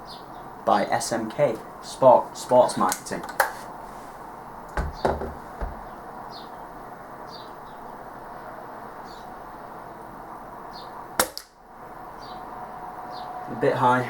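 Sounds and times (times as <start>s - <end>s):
steady background hiss: 0.0s - 14.0s
air rifle firing: 11.2s - 11.5s.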